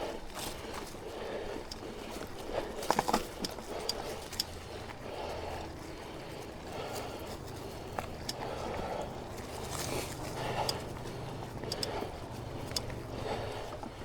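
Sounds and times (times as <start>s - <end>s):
bike clicking and rattling: 0.0s - 14.0s
bike tyres on dirt trail: 0.0s - 14.0s.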